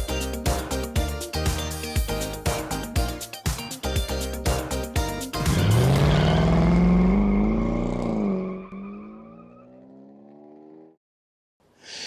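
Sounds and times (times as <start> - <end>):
music: 0.0 - 6.5
car engine revving: 5.4 - 11.0.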